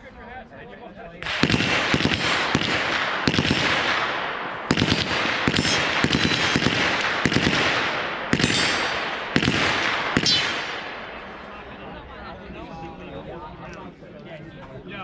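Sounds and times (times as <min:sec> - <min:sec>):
gunshots crackling: 0:01.2 - 0:11.6.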